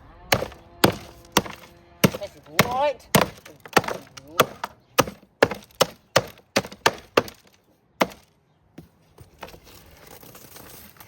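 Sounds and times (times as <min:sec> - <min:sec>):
plastic being smashed: 0:00.3 - 0:08.3.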